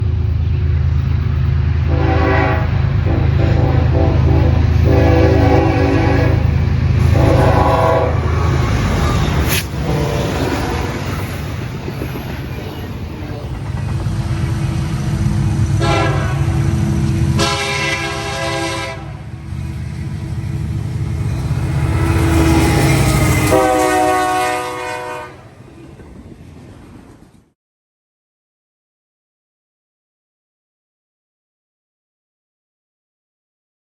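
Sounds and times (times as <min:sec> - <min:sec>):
diesel locomotive rumble: 0:00.0 - 0:27.5
train wheels: 0:00.1 - 0:18.2, 0:19.1 - 0:27.5
locomotive air horn: 0:01.9 - 0:10.8, 0:15.7 - 0:19.4, 0:21.2 - 0:25.5.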